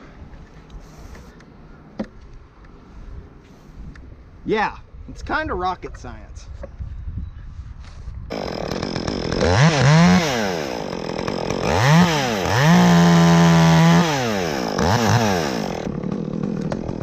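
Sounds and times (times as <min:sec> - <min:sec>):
chainsaw revving: 0:08.3 - 0:17.0.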